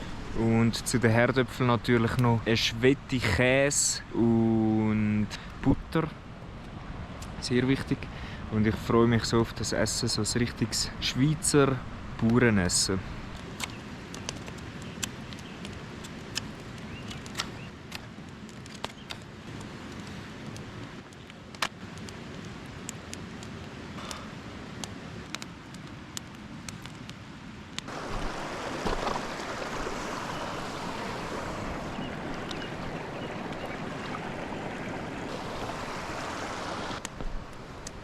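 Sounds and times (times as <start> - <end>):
mountain stream rushing: 0.0 - 4.8, 27.9 - 38.0
campfire crackling and popping: 13.3 - 38.0.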